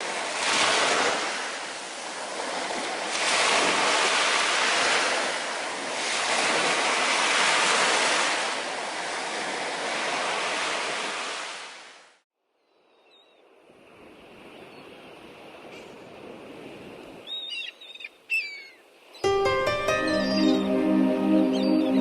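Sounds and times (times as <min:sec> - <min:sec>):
sea waves breaking on shore: 0:00.0 - 0:12.2, 0:13.6 - 0:17.4.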